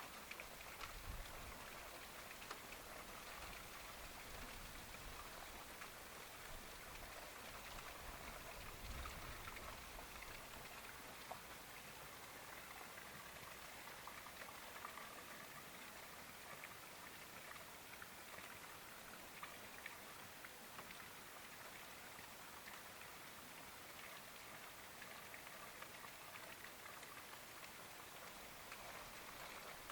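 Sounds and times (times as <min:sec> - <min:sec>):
light rain hiss: 0:00.0 - 0:29.9
raindrop ticks: 0:00.1 - 0:04.7, 0:27.6 - 0:29.9.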